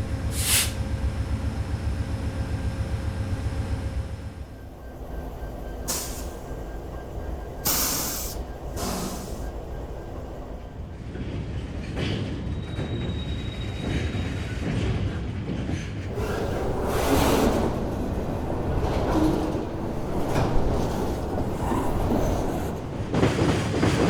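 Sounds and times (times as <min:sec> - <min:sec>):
freight train rumbling: 0:00.0 - 0:24.0
air hisses: 0:00.3 - 0:00.8, 0:07.6 - 0:09.4.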